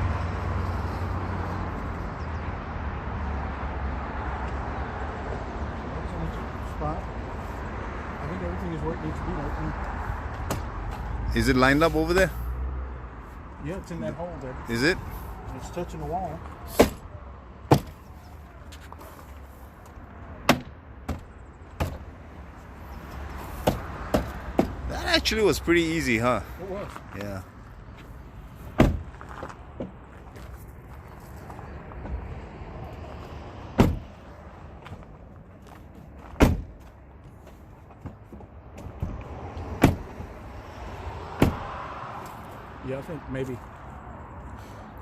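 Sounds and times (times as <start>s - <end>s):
car door clunks: 17.7s - 18.0s, 28.8s - 29.1s, 33.8s - 34.1s, 36.4s - 36.8s, 39.8s - 40.3s, 41.4s - 41.7s.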